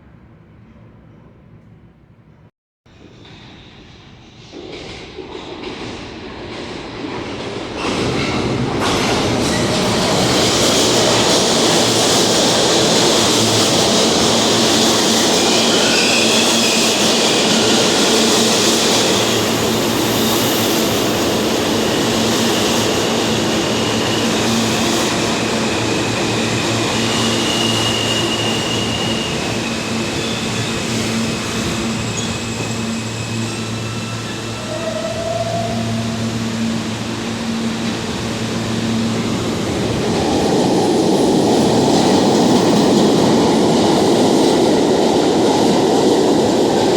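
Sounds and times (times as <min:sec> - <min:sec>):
subway train running: 0:00.0 - 0:46.9
high wheel squeals: 0:14.8 - 0:20.8, 0:23.4 - 0:39.6.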